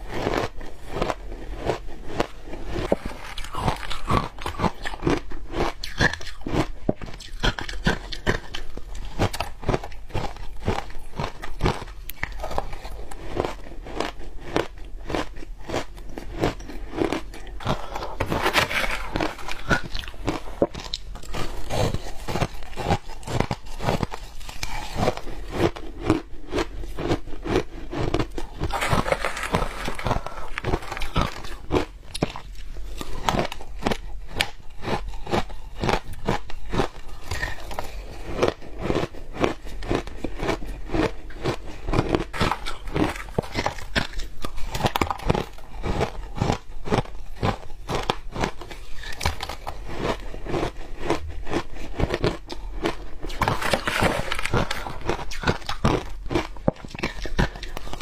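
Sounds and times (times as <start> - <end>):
ice being chewed: 0.0 - 58.0.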